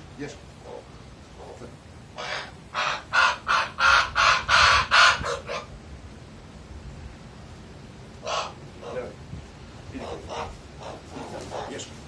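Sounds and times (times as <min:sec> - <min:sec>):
raven croaking: 0:00.6 - 0:05.7, 0:08.2 - 0:09.1, 0:10.0 - 0:12.0.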